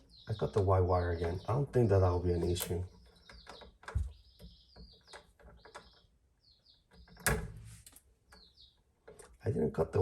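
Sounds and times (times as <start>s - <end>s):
small bird chirping: 0.0s - 10.0s.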